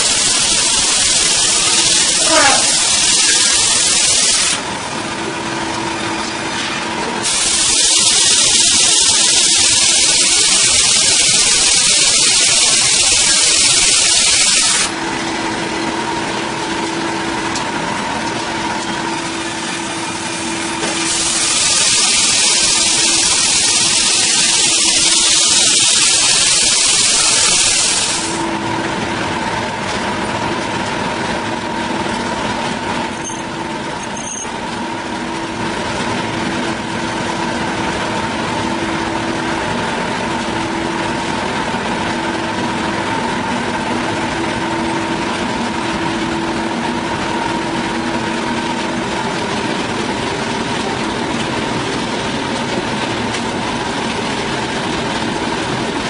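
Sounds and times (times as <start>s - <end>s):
power saw cutting log: 5.9s - 15.0s.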